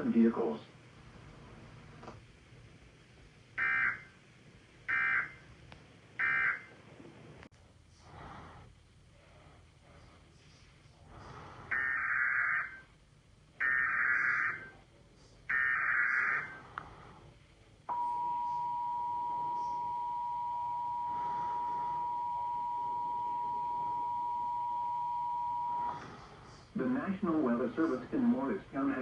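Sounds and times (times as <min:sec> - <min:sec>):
two-tone attention signal: 0:17.9 - 0:26.0.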